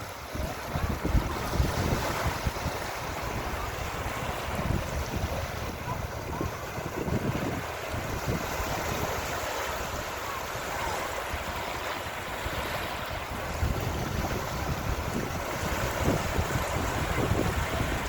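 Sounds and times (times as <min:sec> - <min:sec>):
sea waves splashing on beach: 0:00.0 - 0:18.0
wind buffeting microphone: 0:00.0 - 0:18.0.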